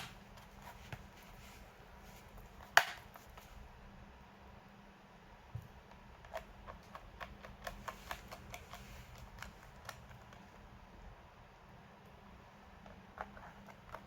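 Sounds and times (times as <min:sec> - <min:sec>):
faint steady hum: 0:00.0 - 0:14.0.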